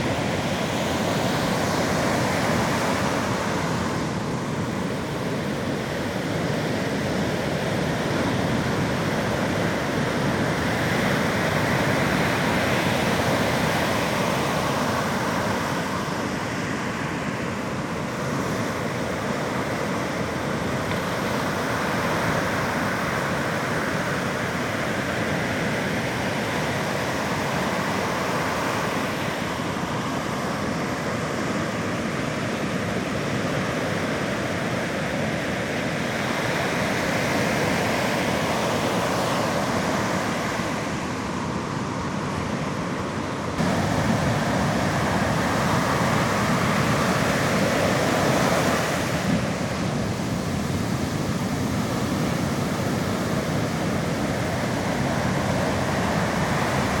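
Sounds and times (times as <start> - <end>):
sea surf washing onto shore: 0.0 - 57.0.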